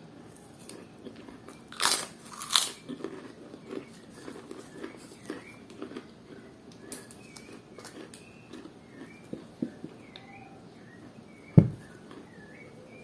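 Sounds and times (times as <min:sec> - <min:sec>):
chewing clicks and smacks: 0:00.4 - 0:10.3, 0:11.9 - 0:12.4
small birds chirping: 0:02.6 - 0:13.0
loud low thump: 0:11.6 - 0:11.8.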